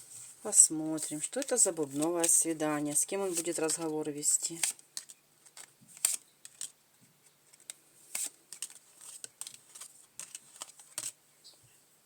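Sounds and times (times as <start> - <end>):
playing cards snapping and sliding: 4.6 - 6.8, 7.5 - 11.2.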